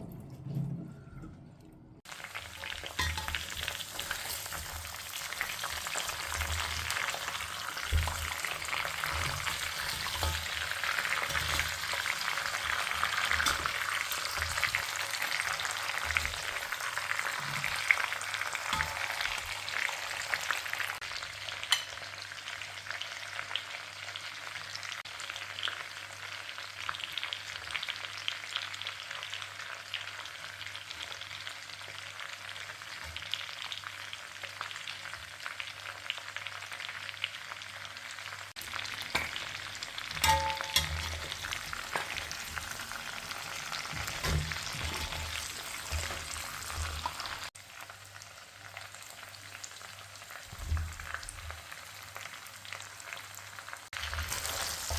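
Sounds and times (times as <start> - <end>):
meat sizzling in hot oil: 2.1 - 54.9
utensil scraping a pan: 2.3 - 20.4, 39.0 - 47.5, 54.0 - 54.9.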